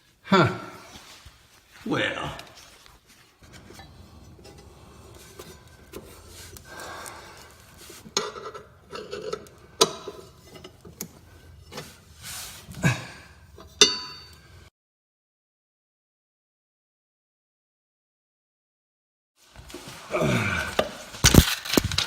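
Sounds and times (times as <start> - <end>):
rubbing and scraping on mower: 0.9 - 12.8, 19.4 - 22.0
sharp knocks and clinks: 13.6 - 14.5.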